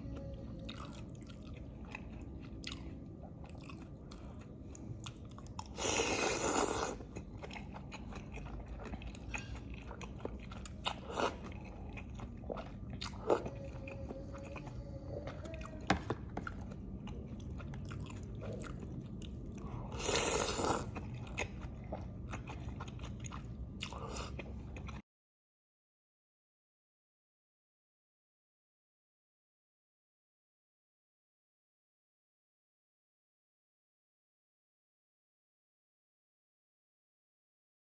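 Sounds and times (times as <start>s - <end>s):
chewing and biting food: 0.0s - 25.0s.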